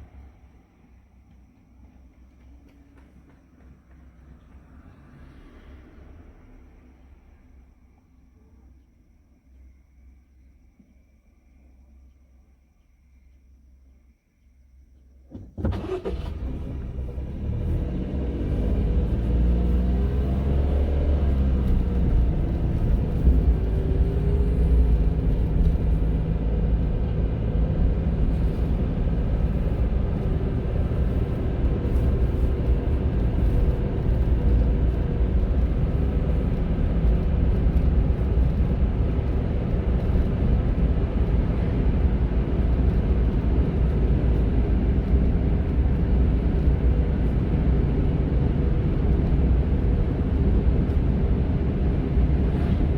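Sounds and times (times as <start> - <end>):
road rumble: 0.0 - 8.8, 15.2 - 52.9
small car engine: 15.3 - 52.9.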